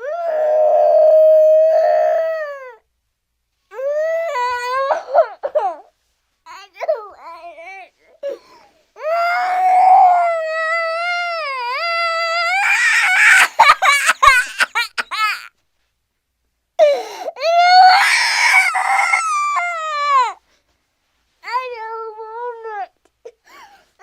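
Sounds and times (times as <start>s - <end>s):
cartoon wailing cry: 9.2s - 15.5s, 17.4s - 20.4s.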